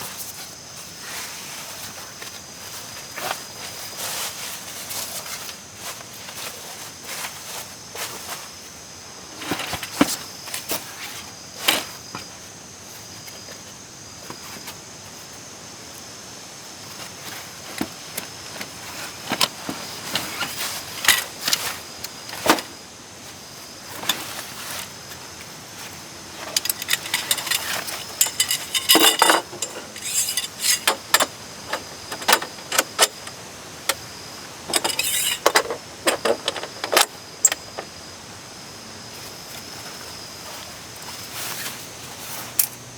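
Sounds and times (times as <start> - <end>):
small metal gear clinking: 26.4 - 33.4, 34.7 - 37.9.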